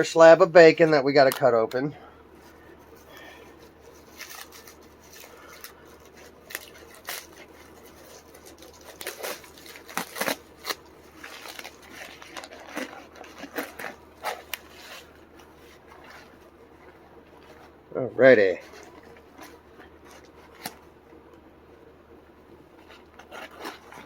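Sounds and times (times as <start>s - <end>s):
plastic crinkling: 0.4s - 21.0s, 22.6s - 24.0s
scissors snipping plastic: 4.2s - 15.0s.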